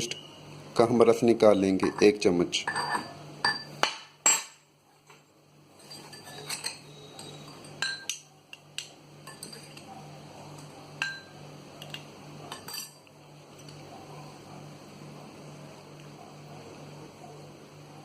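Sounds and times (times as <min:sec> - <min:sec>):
metal spoon clinking against bowl: 0:01.8 - 0:03.7, 0:05.8 - 0:09.9, 0:10.6 - 0:13.8.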